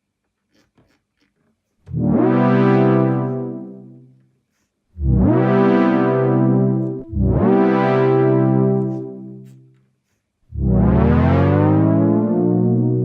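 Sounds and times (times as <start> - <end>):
synth pad chord swooping down: 1.9 - 4.1, 5.0 - 9.6, 10.5 - 13.0.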